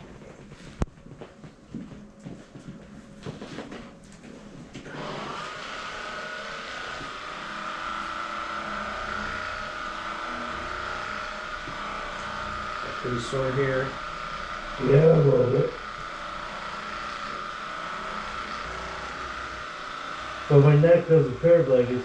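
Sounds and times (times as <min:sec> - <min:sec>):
small electric motor whining: 0:04.8 - 0:22.0.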